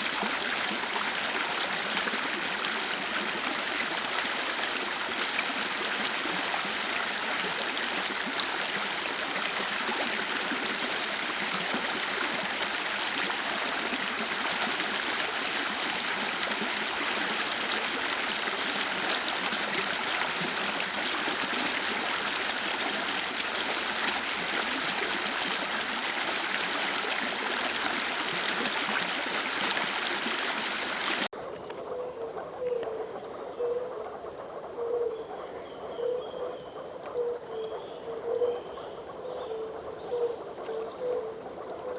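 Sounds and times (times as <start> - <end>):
stream running and gurgling: 0.0 - 31.3.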